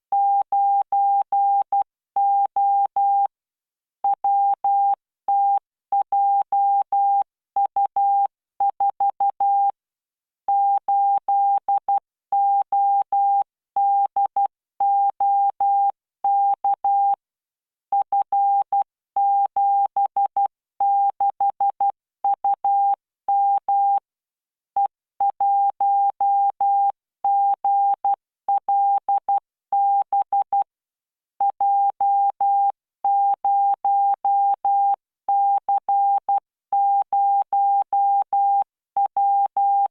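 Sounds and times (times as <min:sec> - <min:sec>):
morse code beeps: 0:31.5 - 0:39.9.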